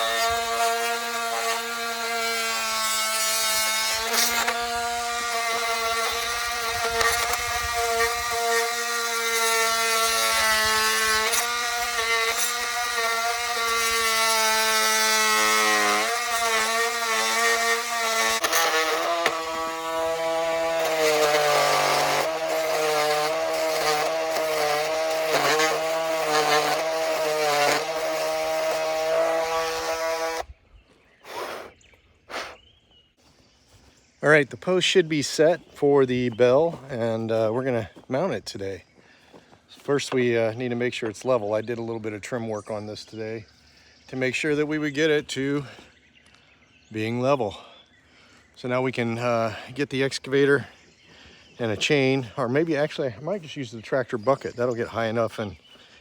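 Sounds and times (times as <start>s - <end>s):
small engine running: 9.3s - 30.5s.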